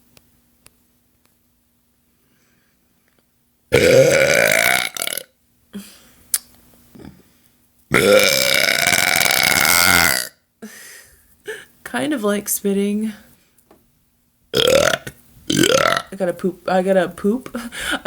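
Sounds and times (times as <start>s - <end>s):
person belching: 3.7s - 5.3s, 7.0s - 7.2s, 7.9s - 10.4s, 14.6s - 16.1s.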